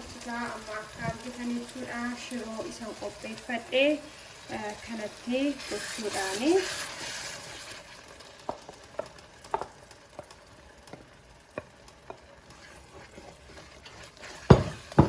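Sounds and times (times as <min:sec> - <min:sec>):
faint sizzle: 0:00.0 - 0:15.0
utensil stirring in a pot: 0:00.2 - 0:15.0
utensil tapping against pot: 0:08.5 - 0:12.3.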